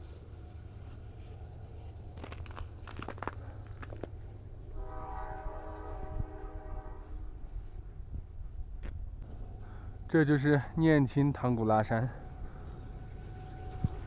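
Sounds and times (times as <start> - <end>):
train horn chord: 4.7 - 7.6.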